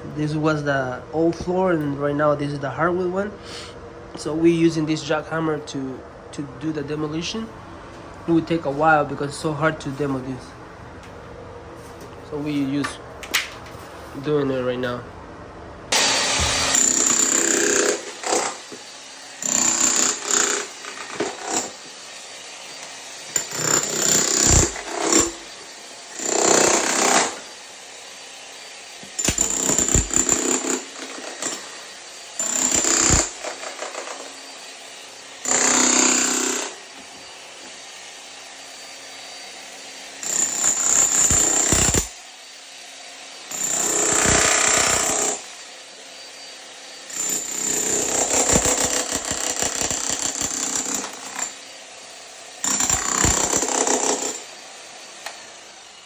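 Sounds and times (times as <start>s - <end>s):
jackhammer chipping floor: 15.9s - 27.6s, 28.8s - 37.9s, 38.6s - 42.2s, 43.4s - 45.8s, 46.8s - 55.7s.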